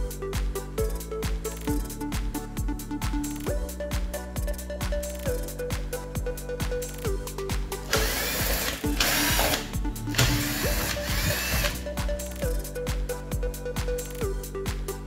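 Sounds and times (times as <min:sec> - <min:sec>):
background music with steady beat: 0:00.0 - 0:15.0
loud whirring noise: 0:10.2 - 0:11.8.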